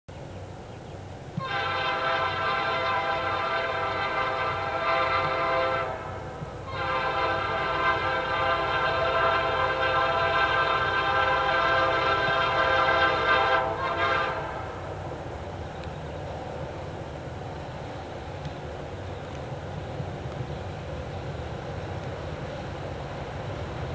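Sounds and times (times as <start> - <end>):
train engines rumbling: 0.1 - 23.9
locomotive air horn blasts: 1.4 - 15.0.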